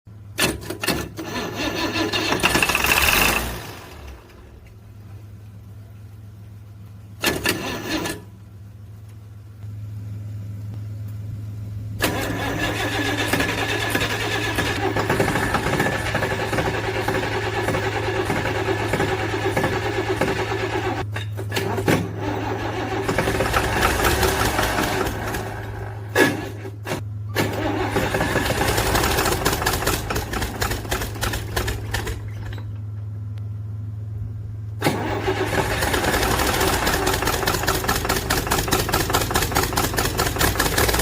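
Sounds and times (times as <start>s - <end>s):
diesel engine cranking: 0.1s - 5.1s, 7.0s - 8.5s, 11.9s - 33.1s, 34.7s - 41.0s
diesel engine running: 0.1s - 41.0s.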